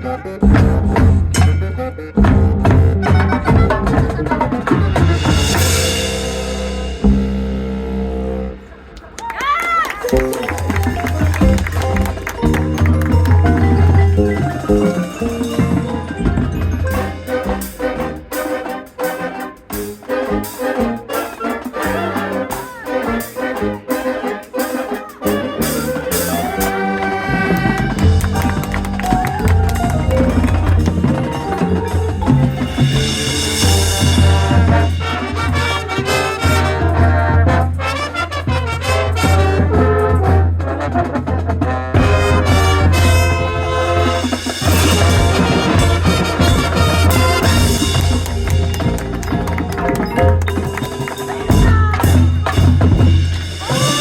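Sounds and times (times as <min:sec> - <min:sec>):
brass instruments: 0:00.0 - 0:54.0
live band playing: 0:00.0 - 0:54.0
sharp percussive strikes: 0:00.5 - 0:07.6, 0:10.1 - 0:20.7, 0:27.7 - 0:36.7, 0:44.2 - 0:54.0
sustained pitched notes: 0:27.2 - 0:36.0.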